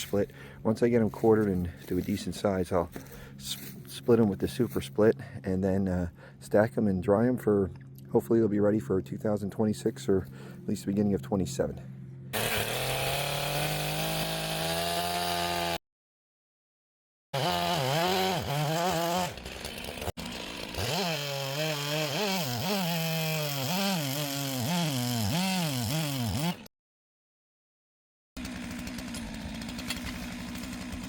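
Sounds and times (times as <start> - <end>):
chainsaw cutting wood: 0.0 - 5.0, 12.3 - 15.8, 17.3 - 26.7, 28.4 - 31.0.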